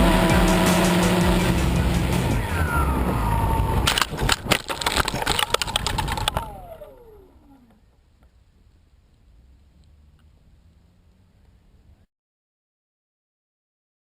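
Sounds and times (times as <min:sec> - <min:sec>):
drone motors whining: 0:00.0 - 0:04.3, 0:04.9 - 0:07.8
sharp crackles and clicks: 0:03.5 - 0:11.6.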